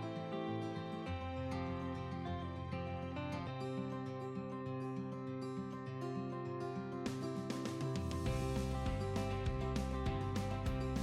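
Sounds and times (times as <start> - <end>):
background music with held notes: 0.0 - 11.0.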